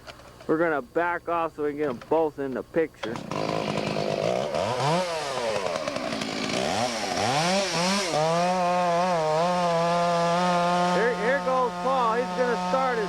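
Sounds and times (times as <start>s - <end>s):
chainsaw revving: 3.0s - 13.0s.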